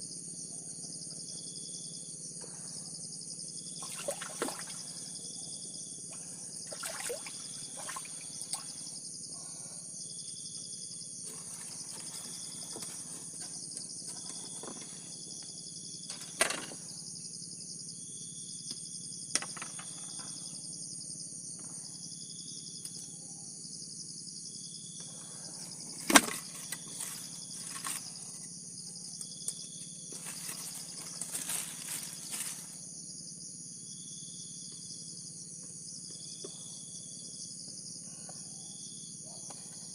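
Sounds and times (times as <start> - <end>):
high-pitched insect drone: 1.6 - 13.9.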